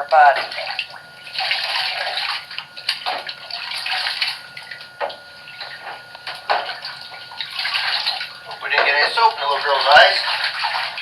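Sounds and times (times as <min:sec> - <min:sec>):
tap water running and splashing: 0:09.5 - 0:11.0.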